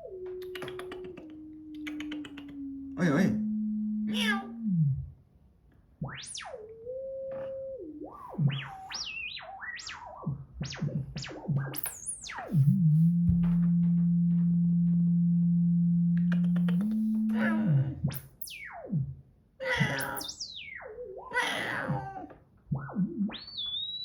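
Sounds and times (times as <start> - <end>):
steady low hum: 0.0 - 5.2, 12.4 - 20.2.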